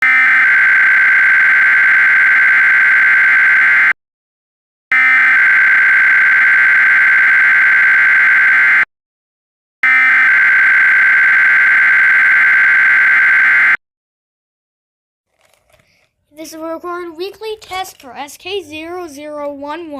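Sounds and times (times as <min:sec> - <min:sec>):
warbling digital data tones: 0:00.0 - 0:03.9, 0:04.9 - 0:08.8.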